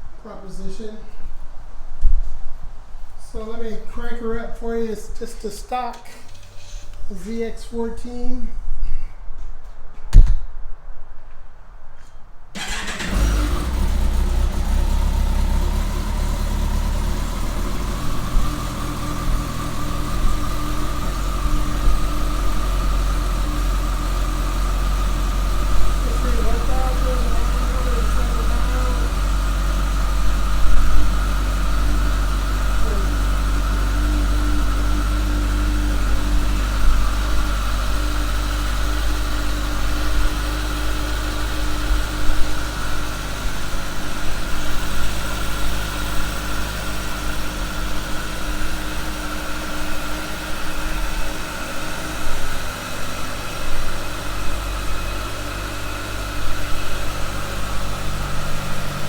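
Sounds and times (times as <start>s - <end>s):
motorcycle engine idling: 12.6s - 59.0s.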